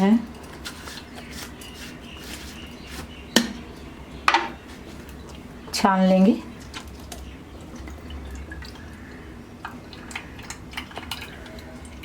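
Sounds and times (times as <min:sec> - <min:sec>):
liquid dripping through strainer: 0:04.8 - 0:12.0.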